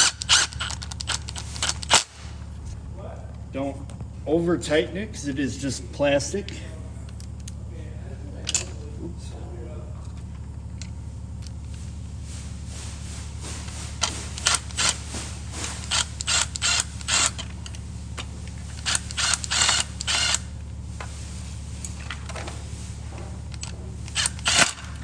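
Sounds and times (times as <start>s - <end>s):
plastic chair parts clicking: 0.0s - 2.2s, 23.5s - 25.0s
steady low hum: 0.0s - 25.0s.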